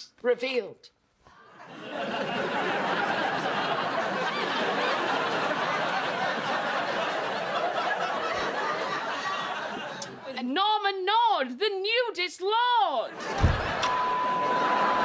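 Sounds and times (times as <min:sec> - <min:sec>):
studio audience laughing: 0:01.3 - 0:10.3, 0:13.1 - 0:15.0.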